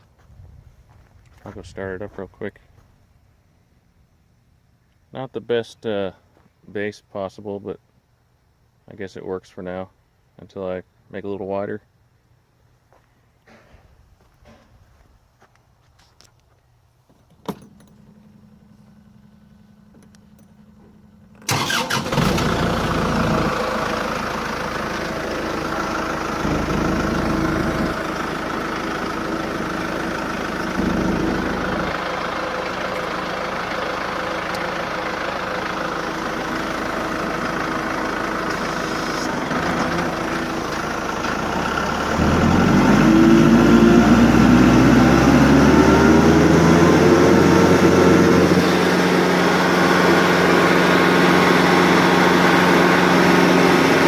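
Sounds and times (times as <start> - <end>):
tractor engine running: 17.3 - 54.0
stump grinder whining: 21.5 - 54.0.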